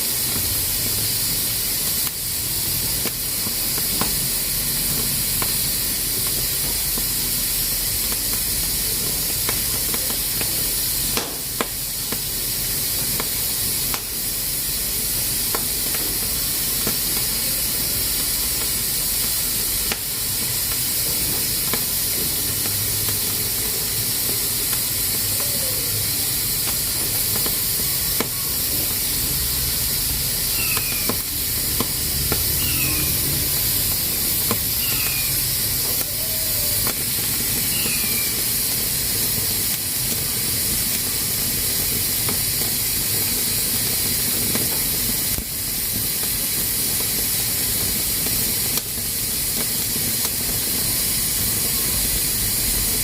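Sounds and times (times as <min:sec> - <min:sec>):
pressure cooker hissing: 0:00.0 - 0:53.0.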